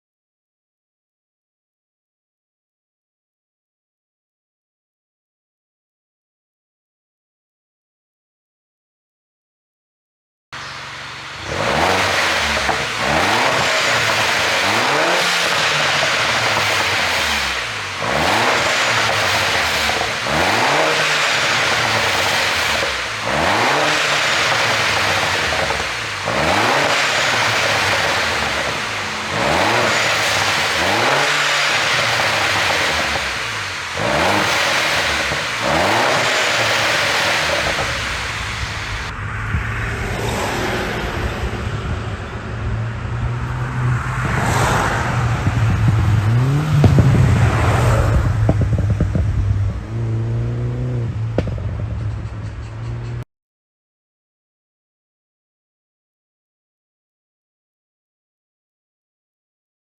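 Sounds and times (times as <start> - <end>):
exhaust pops and crackles: 10.6 - 39.1, 45.0 - 53.2
car engine revving: 10.6 - 53.2.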